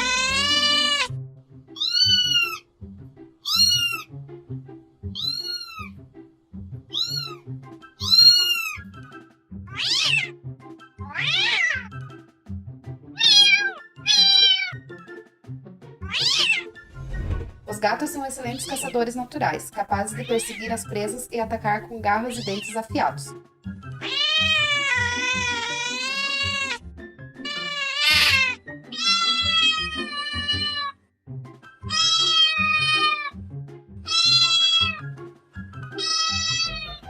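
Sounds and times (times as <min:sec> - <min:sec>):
cat meowing: 0:00.0 - 0:01.1, 0:01.8 - 0:02.6, 0:03.4 - 0:04.1, 0:05.1 - 0:06.0, 0:06.9 - 0:07.4, 0:08.0 - 0:08.9, 0:09.7 - 0:10.4, 0:11.0 - 0:12.0, 0:13.2 - 0:14.8, 0:16.0 - 0:16.8, 0:24.0 - 0:26.8, 0:27.4 - 0:31.0, 0:31.9 - 0:33.4, 0:34.0 - 0:35.1, 0:36.0 - 0:37.0
background music: 0:00.0 - 0:37.0.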